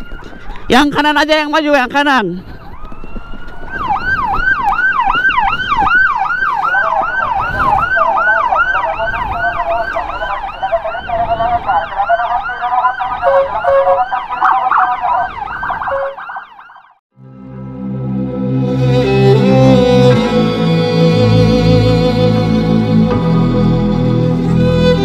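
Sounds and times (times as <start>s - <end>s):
second siren sweeping: 2.6s - 17.0s
electronic siren yelping: 6.7s - 17.0s
string music: 17.2s - 25.0s.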